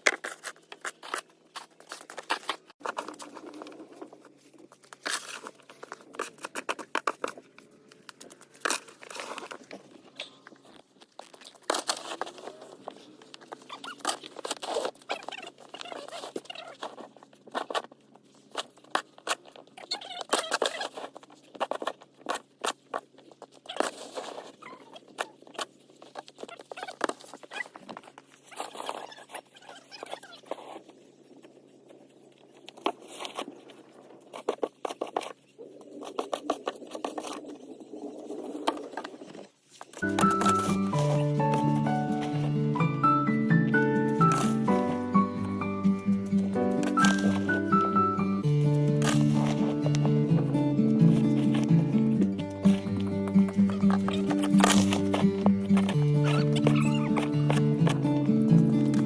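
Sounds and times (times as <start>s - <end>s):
snow shovel scraping snow: 40.0s - 59.0s.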